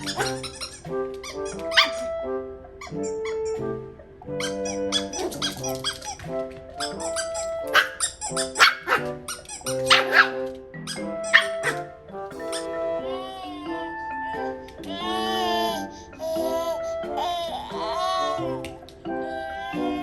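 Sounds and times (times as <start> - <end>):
dog yapping: 0.0 - 2.1, 4.4 - 6.2, 6.8 - 12.7
background music: 0.0 - 20.0.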